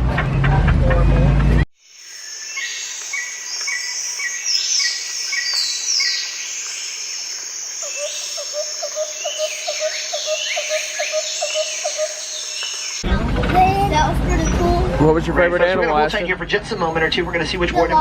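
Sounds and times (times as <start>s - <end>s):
birds calling and chirping: 0.3s - 18.0s
low repeating bird call: 2.2s - 13.0s.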